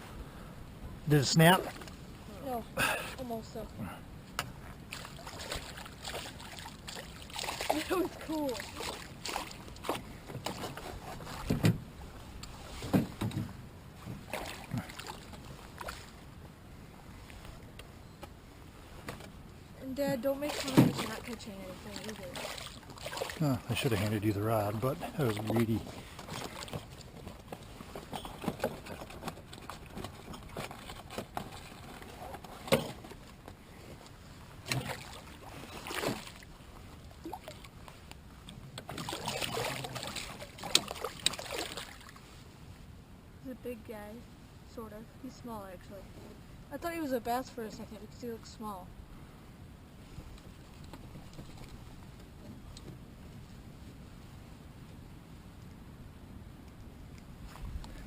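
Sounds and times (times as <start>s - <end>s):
knocks and taps in a canoe: 8.8s - 16.0s, 25.3s - 35.1s, 37.8s - 41.8s, 50.4s - 53.1s.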